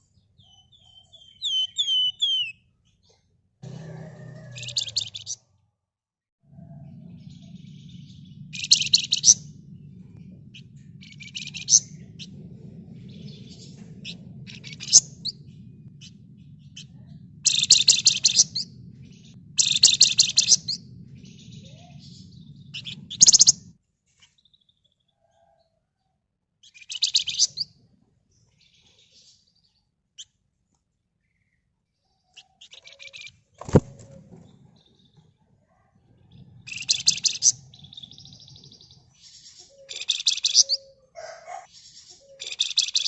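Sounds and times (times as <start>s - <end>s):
high bird chirps: 0.4s - 2.7s, 3.8s - 5.4s, 6.5s - 23.7s, 26.6s - 27.8s, 36.3s - 43.0s
low hum: 3.6s - 5.3s, 6.4s - 23.8s, 36.0s - 41.0s
songbird buzzy chattering trills: 6.6s - 23.7s, 26.8s - 27.7s, 36.3s - 43.0s.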